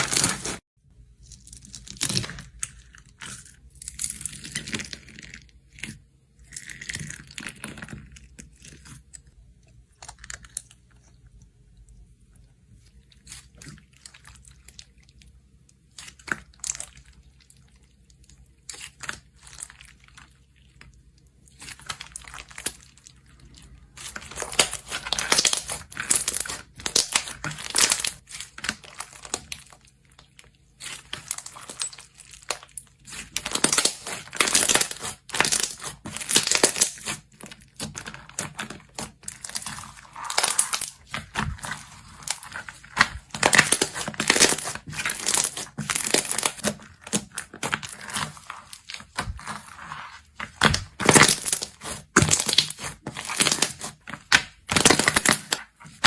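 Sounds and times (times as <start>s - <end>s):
slime crackling by hand: 18.2s - 56.0s.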